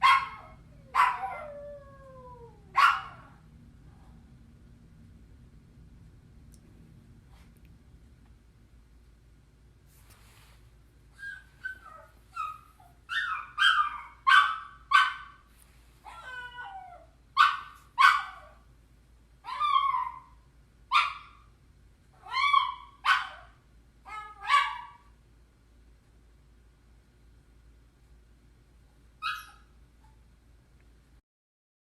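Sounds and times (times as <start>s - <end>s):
small dog whining: 11.2s - 14.5s, 16.1s - 17.1s, 19.5s - 20.4s, 29.2s - 30.2s.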